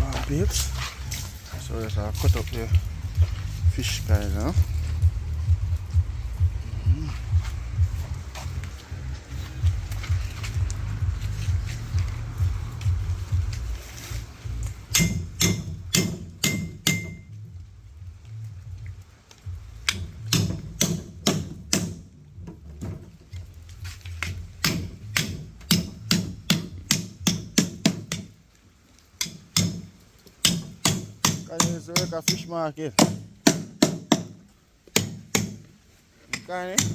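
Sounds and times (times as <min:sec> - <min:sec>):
steady low hum: 0:00.0 - 0:22.6.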